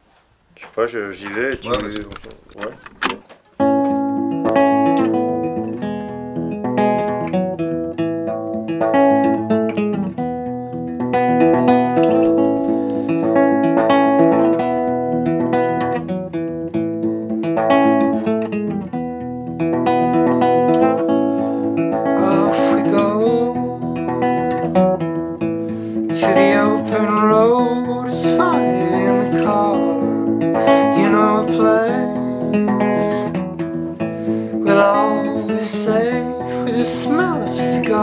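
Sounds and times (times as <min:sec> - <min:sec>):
acoustic guitar playing: 0:01.2 - 0:38.0.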